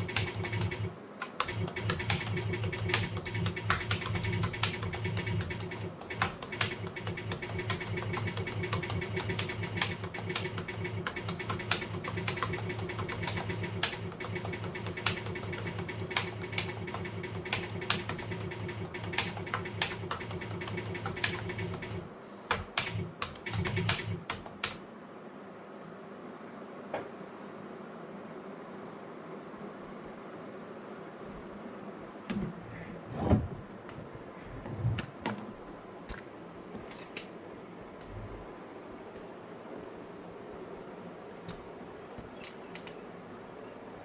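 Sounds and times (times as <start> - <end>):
typing on computer keyboard: 0.0 - 24.8, 42.4 - 43.0.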